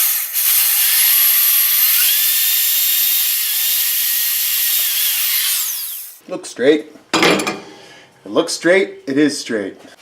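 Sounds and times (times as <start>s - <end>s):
electric drill boring wood: 0.0s - 6.2s.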